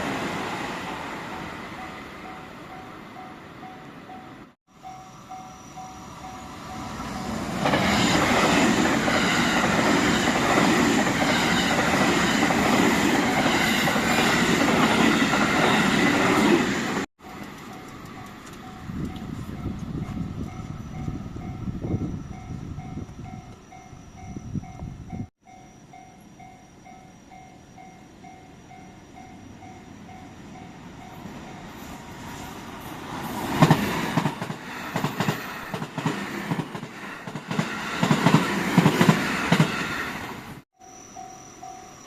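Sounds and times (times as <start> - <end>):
train running past: 0.0 - 42.0
level-crossing warning bell: 1.6 - 8.6, 11.3 - 15.9, 17.2 - 32.2, 40.7 - 42.0
train wheels thudding over rail joints: 33.4 - 39.9.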